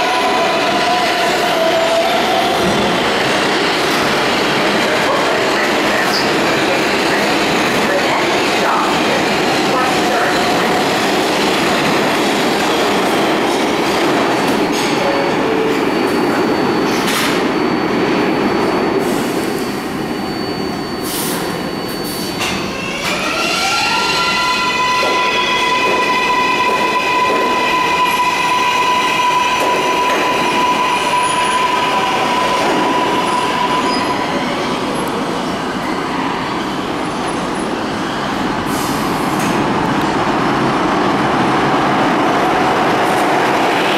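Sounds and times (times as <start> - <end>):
subway train rumbling: 0.0 - 43.9
train cars clattering on rails: 2.5 - 17.8.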